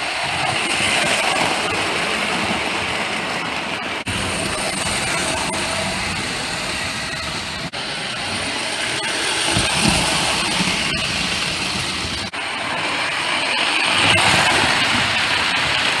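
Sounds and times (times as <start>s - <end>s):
wheels clattering on track: 0.1s - 16.0s
toy train motor whirring: 4.0s - 16.0s.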